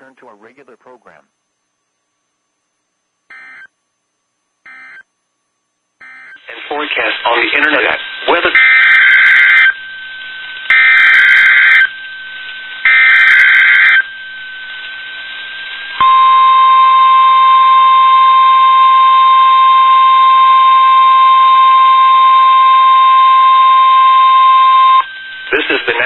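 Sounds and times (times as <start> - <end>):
steady single-pitch alarm tone: 3.3 - 3.7, 4.6 - 5.1, 6.0 - 6.5, 8.2 - 25.5.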